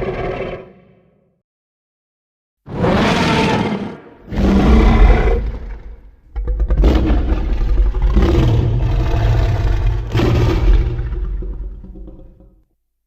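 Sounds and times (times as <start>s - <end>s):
monster roar: 2.7s - 12.2s.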